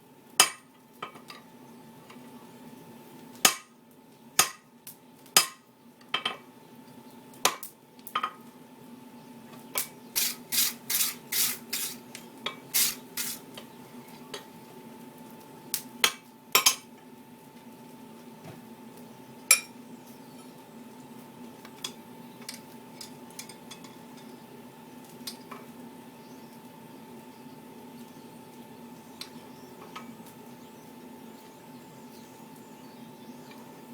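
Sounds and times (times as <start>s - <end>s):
hammer striking metal on anvil: 0.4s - 0.6s, 4.4s - 4.6s, 5.4s - 5.6s.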